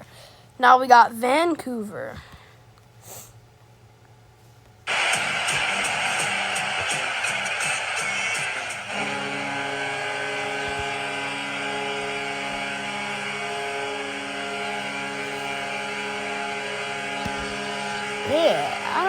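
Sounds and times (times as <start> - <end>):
goal horn blast: 4.9 - 19.0
music: 4.9 - 19.0.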